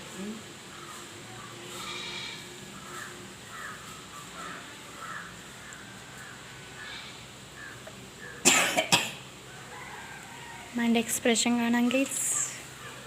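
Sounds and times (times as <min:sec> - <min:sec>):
woman coughing: 0:08.4 - 0:09.2.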